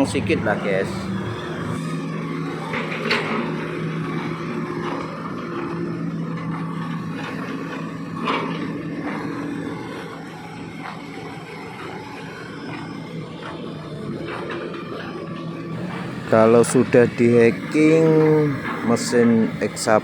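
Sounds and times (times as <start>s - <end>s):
diesel engine running: 0.0s - 8.2s, 15.7s - 20.0s.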